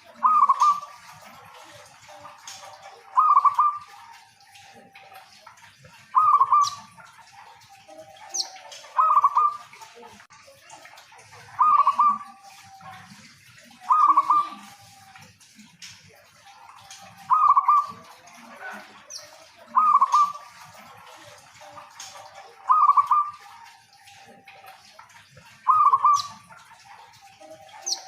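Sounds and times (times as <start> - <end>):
dove cooing: 0.0 - 10.0, 11.3 - 15.2, 16.4 - 28.0
high bird chirps: 0.2 - 1.0, 2.5 - 3.9, 6.1 - 7.0, 8.2 - 9.6, 11.6 - 12.5, 13.9 - 14.8, 19.1 - 20.5, 22.6 - 23.5, 25.6 - 26.4.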